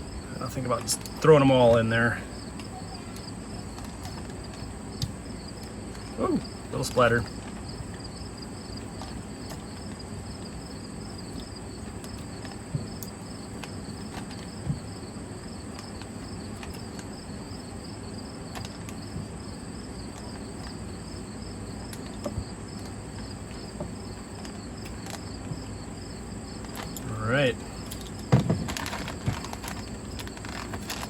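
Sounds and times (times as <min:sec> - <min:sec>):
constant high buzz: 0:00.0 - 0:31.0
insects chirping: 0:00.0 - 0:31.0
handling knocks: 0:27.9 - 0:31.0.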